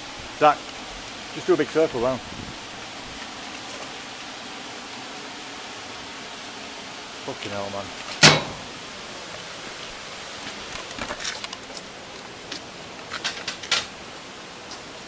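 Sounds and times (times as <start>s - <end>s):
rain hissing: 0.0s - 15.0s
loud knock: 8.2s - 8.7s.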